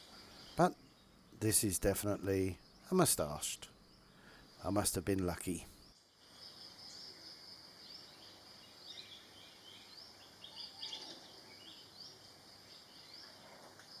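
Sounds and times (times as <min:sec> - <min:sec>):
bird chirps: 0:08.0 - 0:14.0.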